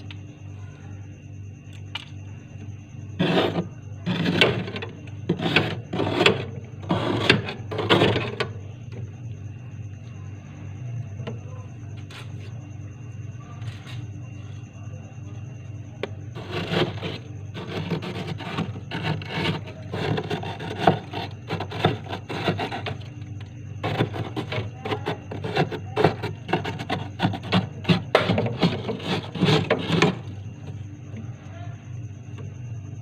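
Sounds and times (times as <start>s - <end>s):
steady low hum: 0.0s - 33.0s
ice scraping in freezer: 3.2s - 9.1s, 16.0s - 31.2s.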